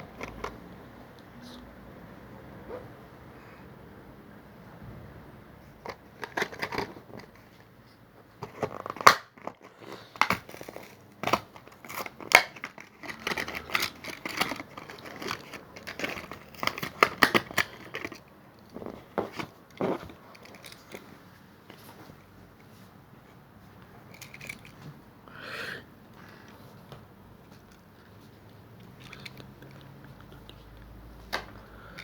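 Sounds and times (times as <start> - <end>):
stiff plastic crinkling: 8.4 - 21.2.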